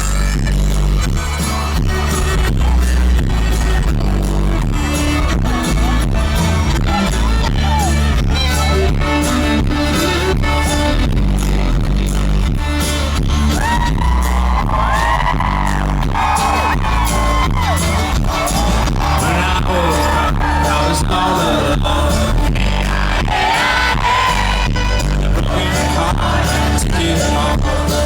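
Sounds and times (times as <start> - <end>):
live folk-rock band playing: 0.0 - 28.0
person singing: 13.6 - 28.0.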